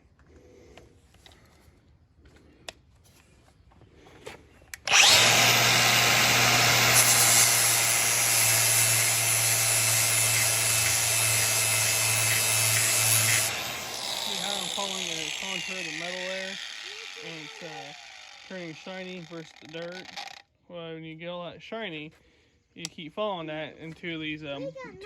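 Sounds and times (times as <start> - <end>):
angle grinder grinding metal: 4.8 - 20.4.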